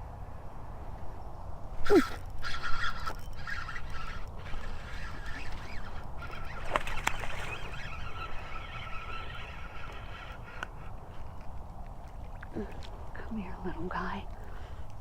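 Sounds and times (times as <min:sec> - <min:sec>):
birds calling: 0:01.2 - 0:13.0.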